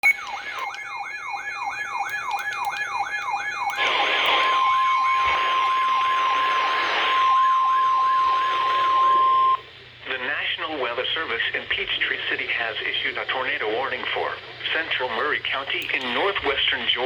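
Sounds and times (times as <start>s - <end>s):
electronic siren sweeping: 0.0s - 9.6s
steady high tones: 0.0s - 9.6s
weather radio alarm tone: 0.0s - 9.7s.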